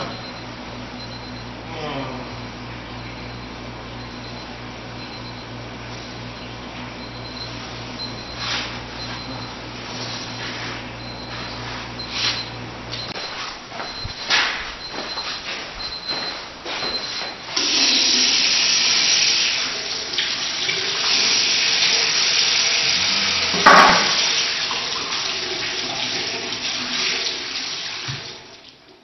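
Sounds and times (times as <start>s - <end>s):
watch alarm beeps: 0.0s - 1.6s, 2.2s - 18.5s
water running into sink: 17.6s - 29.0s.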